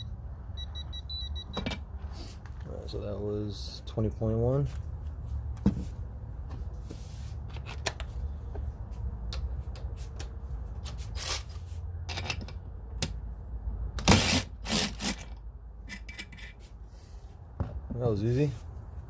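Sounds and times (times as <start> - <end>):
tools clicking and clanking: 9.2 - 13.2, 14.0 - 16.7
electric ratchet bursts: 14.0 - 15.3.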